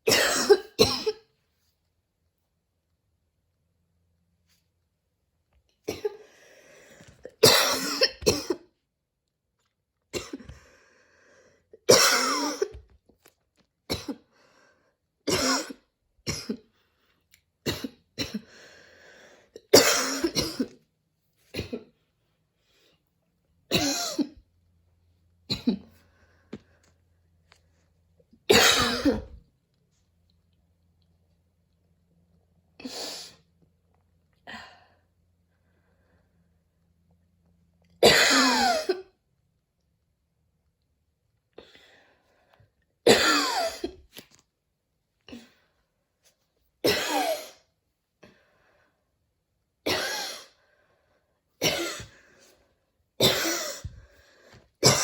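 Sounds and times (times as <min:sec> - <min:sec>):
woman coughing harshly: 0:00.0 - 0:01.3, 0:05.9 - 0:06.2, 0:07.4 - 0:08.7, 0:10.2 - 0:10.5, 0:11.8 - 0:12.8, 0:13.9 - 0:14.3, 0:15.3 - 0:16.7, 0:17.6 - 0:18.5, 0:19.7 - 0:20.8, 0:21.5 - 0:21.9, 0:23.7 - 0:24.4, 0:25.5 - 0:26.0, 0:28.5 - 0:29.4, 0:38.0 - 0:39.1, 0:43.1 - 0:44.0, 0:46.8 - 0:47.6, 0:49.9 - 0:50.5, 0:51.6 - 0:52.2, 0:53.2 - 0:54.0, 0:54.8 - 0:55.0.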